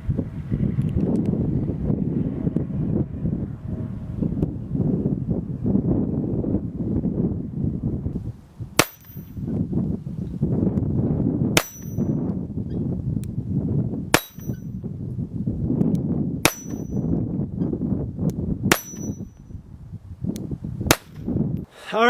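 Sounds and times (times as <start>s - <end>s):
rifle gunshots with metallic ring: 8.8s - 9.4s, 11.6s - 12.2s, 14.2s - 14.8s, 16.4s - 17.1s, 18.7s - 19.4s.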